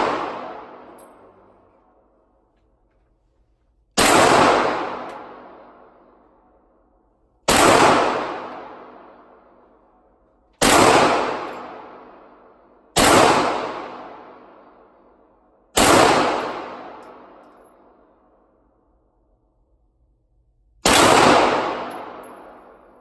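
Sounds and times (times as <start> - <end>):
gunshots with echo: 0.0 - 1.3, 4.0 - 5.9, 7.5 - 9.3, 10.6 - 12.2, 13.0 - 14.4, 15.8 - 17.4, 20.8 - 23.0.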